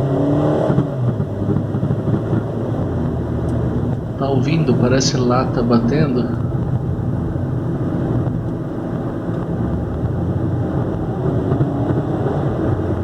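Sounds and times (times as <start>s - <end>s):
car engine running: 0.0s - 13.0s.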